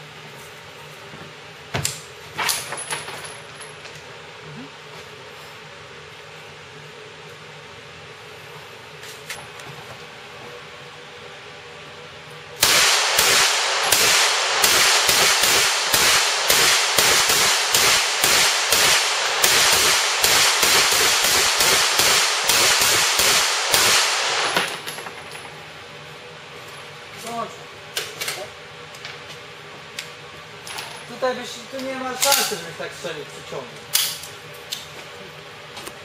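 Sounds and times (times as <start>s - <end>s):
rapid gunshots: 12.6s - 24.7s.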